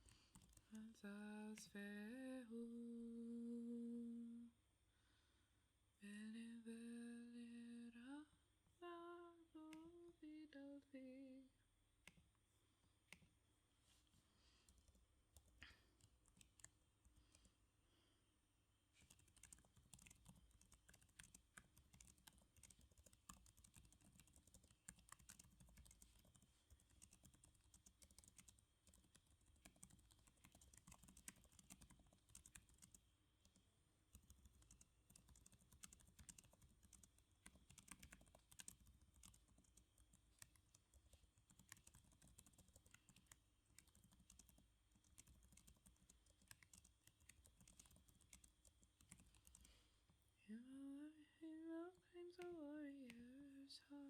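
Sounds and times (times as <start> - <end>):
faint keyboard typing: 0.0 - 1.8, 9.6 - 10.1, 12.0 - 18.1, 18.9 - 50.3, 51.0 - 54.0.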